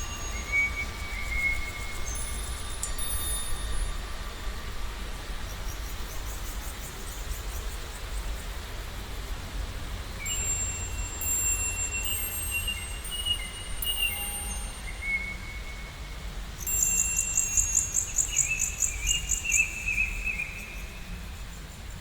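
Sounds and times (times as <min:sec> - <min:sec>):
high ringing tones: 0:00.0 - 0:04.4, 0:10.2 - 0:19.8
even hiss: 0:00.0 - 0:22.0.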